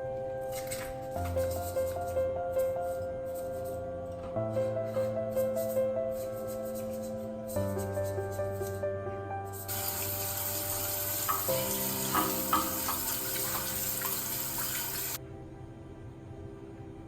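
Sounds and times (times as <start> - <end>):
soft background music: 0.0 - 17.0
running water rinsing parts: 9.7 - 15.2.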